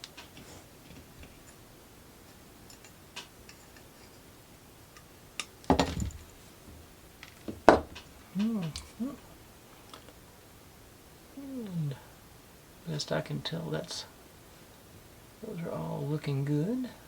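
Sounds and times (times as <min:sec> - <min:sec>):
hard objects knocking on workbench: 0:05.7 - 0:06.2, 0:07.5 - 0:08.0.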